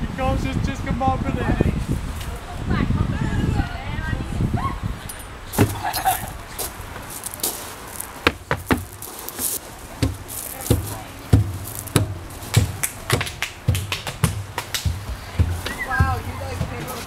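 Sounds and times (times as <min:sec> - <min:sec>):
sharp knocks: 0:05.6 - 0:05.8, 0:08.2 - 0:09.0, 0:10.0 - 0:17.0.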